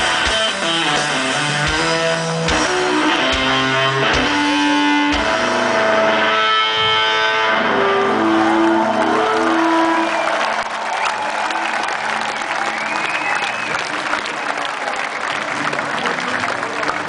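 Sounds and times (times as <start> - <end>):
rock band playing live: 0.0 - 10.1
electric guitar riff: 0.0 - 10.3.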